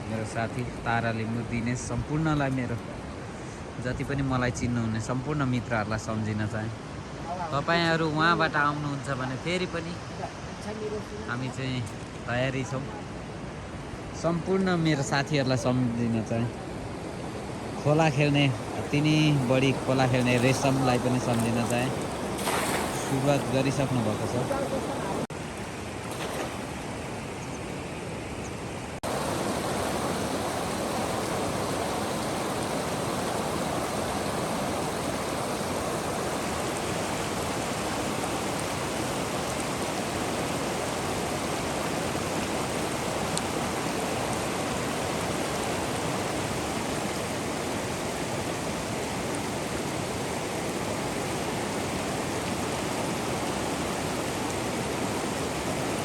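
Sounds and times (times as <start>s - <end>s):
river water rushing: 12.8s - 56.0s.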